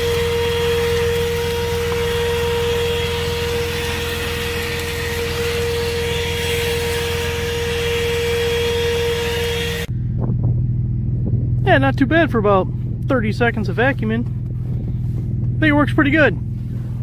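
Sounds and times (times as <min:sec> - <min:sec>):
handheld vacuum motor whine: 0:00.0 - 0:09.9
truck engine idling: 0:00.0 - 0:17.0.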